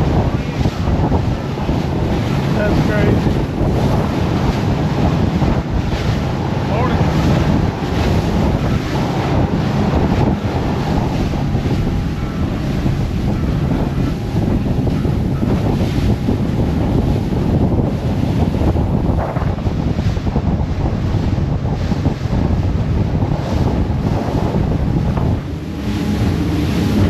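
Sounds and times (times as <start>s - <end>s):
water splashing around boat: 0.0s - 27.0s
wind buffeting microphone: 0.0s - 27.0s.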